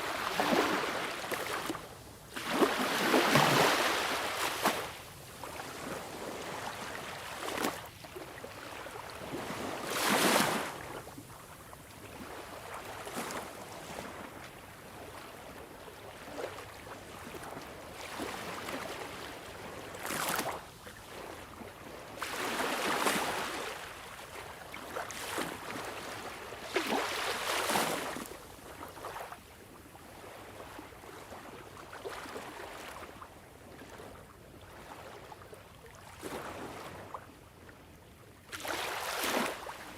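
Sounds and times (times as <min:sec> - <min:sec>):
sea waves breaking: 0:00.0 - 0:05.0.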